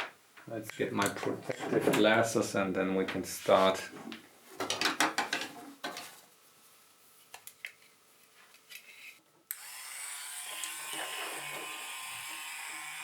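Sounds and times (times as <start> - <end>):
hard objects clattering: 4.0 - 6.2
handheld electric tool whining: 9.5 - 13.0.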